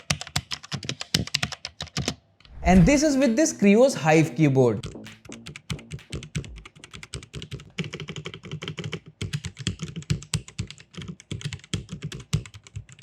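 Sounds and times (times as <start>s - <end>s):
mechanical keyboard typing: 0.1s - 2.0s, 6.5s - 13.0s.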